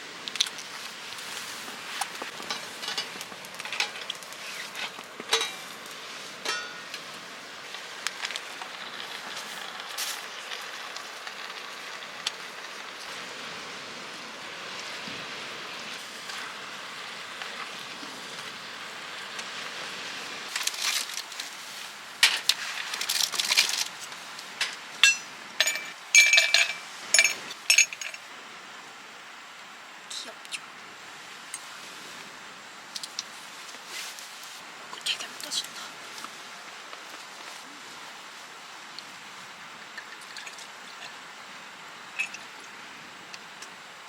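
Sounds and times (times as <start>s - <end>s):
steady soft hiss: 0.0s - 44.0s
cookware clinking and knocking: 6.5s - 6.9s, 25.0s - 28.2s.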